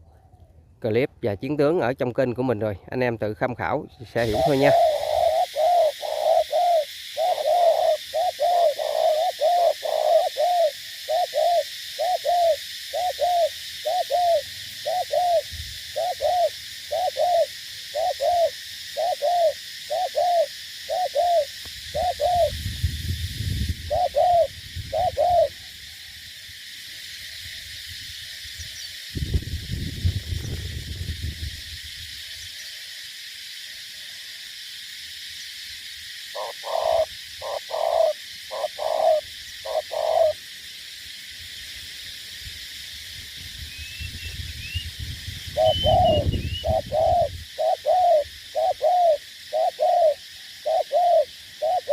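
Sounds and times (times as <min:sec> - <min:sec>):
insects hissing: 0:00.0 - 0:51.9
dove cooing: 0:04.0 - 0:22.6, 0:23.8 - 0:25.7, 0:36.3 - 0:40.4, 0:45.5 - 0:51.9.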